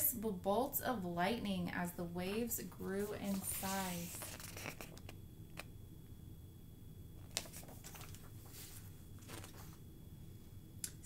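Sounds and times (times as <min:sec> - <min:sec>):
book page turning: 0:03.0 - 0:05.7, 0:07.2 - 0:09.8.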